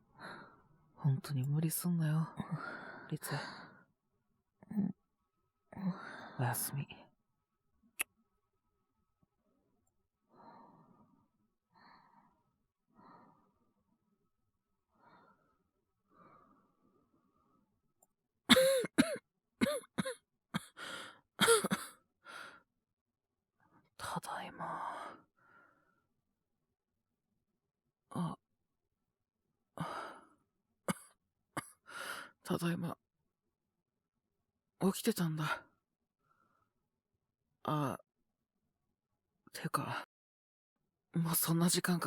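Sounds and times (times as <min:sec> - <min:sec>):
faint breath: 0:00.1 - 0:00.7, 0:10.3 - 0:13.8, 0:14.9 - 0:17.6, 0:20.8 - 0:21.2
soft human breathing: 0:10.3 - 0:13.8
man coughing: 0:18.5 - 0:20.8, 0:21.4 - 0:22.0.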